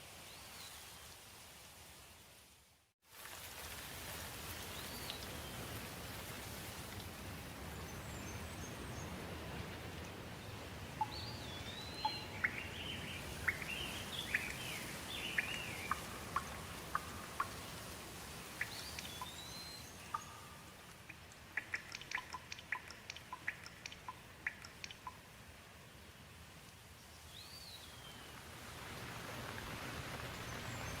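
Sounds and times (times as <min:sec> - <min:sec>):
steady rain: 0:00.0 - 0:31.0
water drips: 0:03.2 - 0:08.0, 0:09.2 - 0:25.6.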